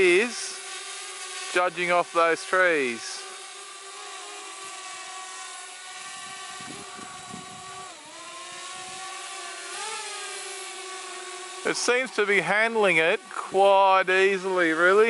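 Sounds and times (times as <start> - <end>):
drone propellers whining: 0.0 - 15.0
wind rumbling on microphone: 6.2 - 7.9.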